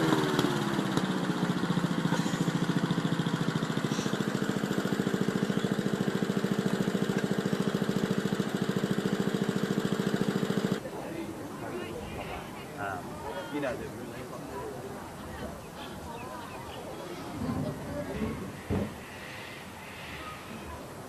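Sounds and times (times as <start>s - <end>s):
lawn mower engine idling: 0.0s - 13.6s.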